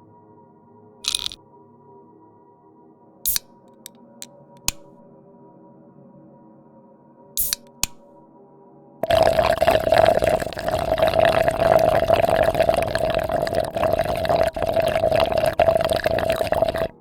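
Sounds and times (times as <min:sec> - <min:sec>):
drink slurped through a straw: 0:01.0 - 0:01.4, 0:07.4 - 0:07.6, 0:09.0 - 0:17.0.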